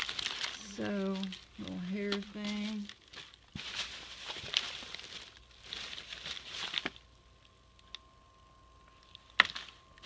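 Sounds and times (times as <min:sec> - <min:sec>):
plastic rustling and crinkling: 0:00.0 - 0:08.1, 0:08.8 - 0:10.0.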